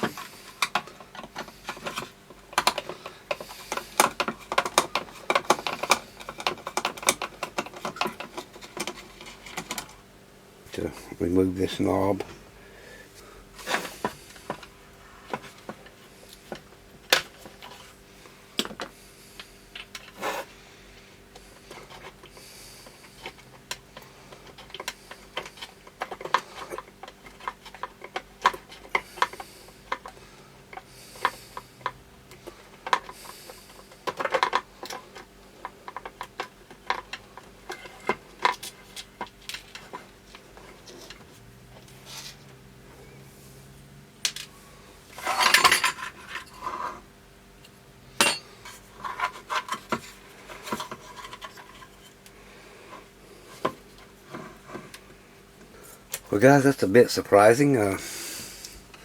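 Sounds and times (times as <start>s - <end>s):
small tools clicking and scraping: 0.0s - 10.0s, 21.3s - 42.6s, 45.1s - 56.3s
faint steady hum: 0.0s - 59.0s.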